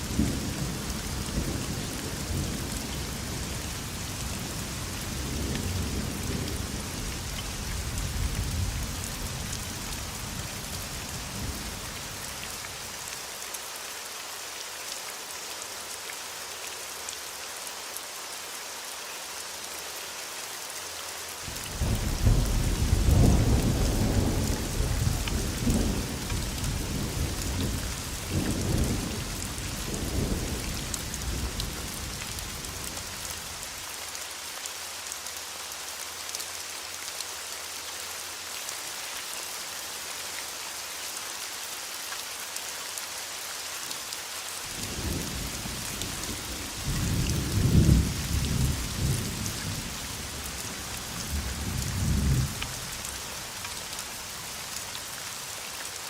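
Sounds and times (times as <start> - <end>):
heavy rain: 0.0 - 56.0
rolling thunder: 21.8 - 30.7.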